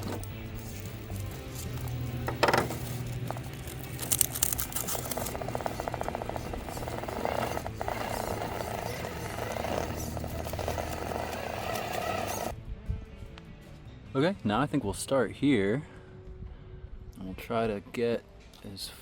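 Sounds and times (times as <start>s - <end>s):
electric motor whirring in pulses: 0.0s - 12.5s
chassis knocks and rattles: 1.8s - 12.5s.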